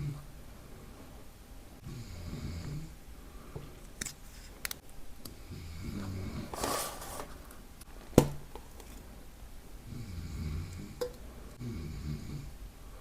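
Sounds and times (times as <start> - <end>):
man snoring: 1.8 - 3.0, 5.4 - 6.5, 9.9 - 11.0, 11.6 - 12.6.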